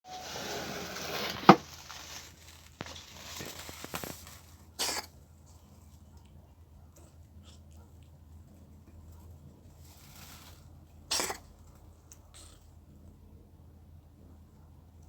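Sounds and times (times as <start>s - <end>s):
cat coughing and sneezing: 4.8s - 5.2s, 11.1s - 11.6s.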